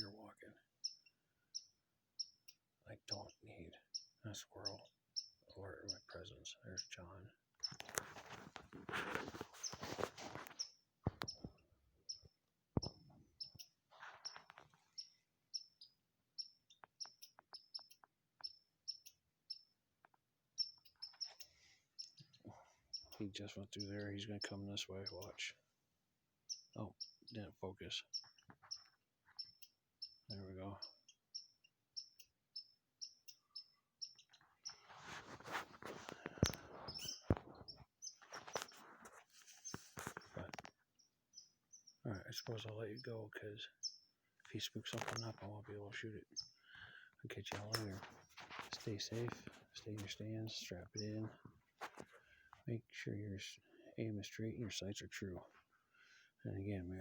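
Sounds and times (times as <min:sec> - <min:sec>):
squirrel alarm chirps: 0:00.0 - 0:08.2, 0:09.5 - 0:25.6, 0:26.3 - 0:51.4
rustling: 0:07.7 - 0:11.2, 0:13.9 - 0:15.0, 0:34.6 - 0:40.8, 0:47.5 - 0:50.1.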